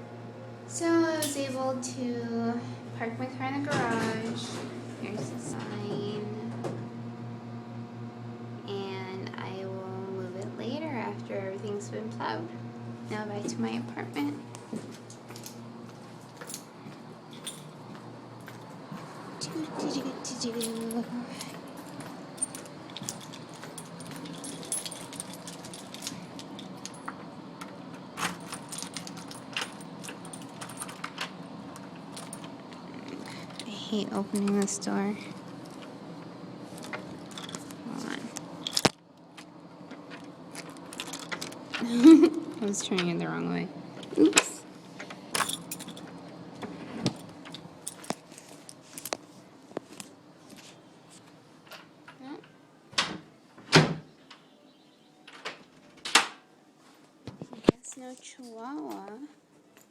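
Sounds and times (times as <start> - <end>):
steady low hum: 0.0 - 53.0
keys jangling: 1.2 - 1.5, 16.4 - 16.7, 17.3 - 18.6, 20.5 - 27.2, 28.2 - 31.2, 32.1 - 33.7, 36.8 - 37.7, 40.6 - 41.6, 45.4 - 46.1, 47.1 - 49.2.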